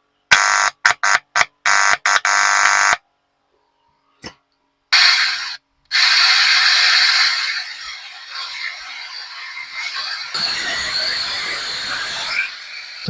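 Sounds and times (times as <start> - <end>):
loudspeaker buzzing tones: 0.3 - 3.0
loudspeaker hissy rush: 10.4 - 13.0.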